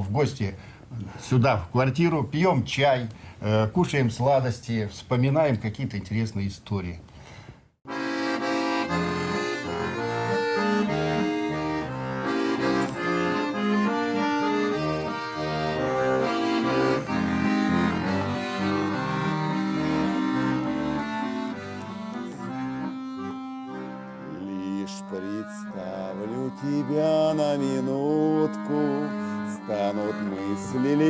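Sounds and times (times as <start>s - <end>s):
accordion playing folk melody: 7.8s - 31.0s.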